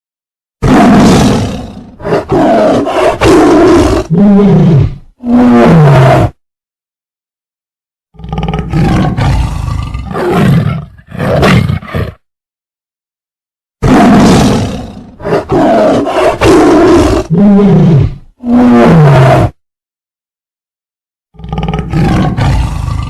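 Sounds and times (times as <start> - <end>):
tiger growling and roaring: 0.6 - 6.4, 8.2 - 12.2, 13.8 - 19.6, 21.4 - 23.0.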